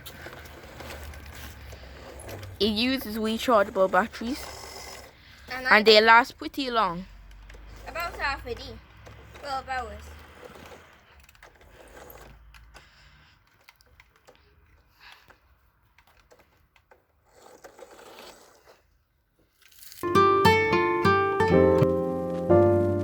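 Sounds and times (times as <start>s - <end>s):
faint handling clicks and rustles: 5.0s - 17.2s
acoustic guitar music: 20.0s - 23.0s.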